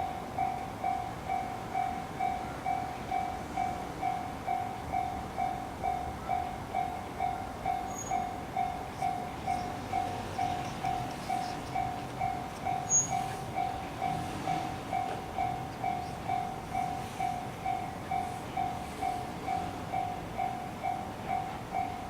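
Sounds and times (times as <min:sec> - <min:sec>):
level-crossing warning bell: 0:00.0 - 0:22.0
passing electric train: 0:00.0 - 0:22.0
sharp high squeak: 0:07.9 - 0:08.2, 0:12.8 - 0:13.4.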